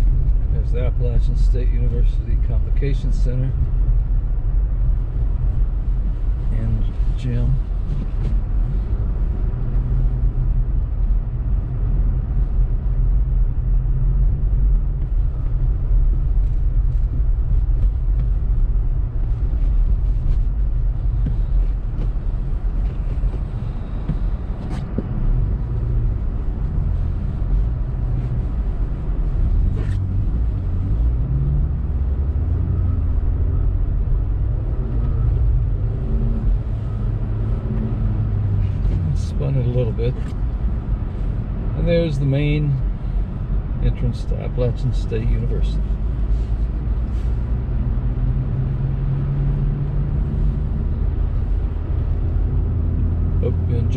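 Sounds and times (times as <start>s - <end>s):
car engine and tyre noise: 0.0s - 53.9s.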